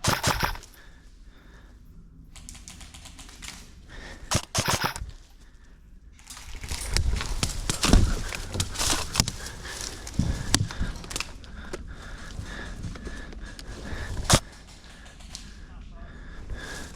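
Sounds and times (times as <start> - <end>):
airsoft guns firing: 0.0 - 1.0, 2.4 - 5.4, 13.9 - 15.7
rustling with knocks and thumps: 6.2 - 15.6.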